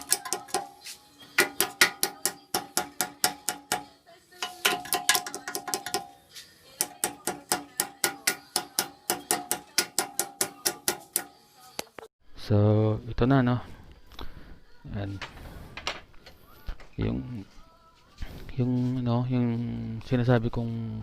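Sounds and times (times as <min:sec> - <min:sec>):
hammer striking steel: 0:00.0 - 0:06.2, 0:06.8 - 0:11.4.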